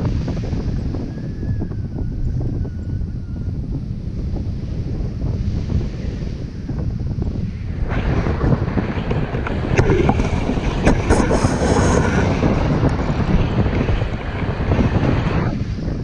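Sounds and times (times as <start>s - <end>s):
wind buffeting microphone: 0.0s - 16.0s
sharp crackles: 7.7s - 15.5s.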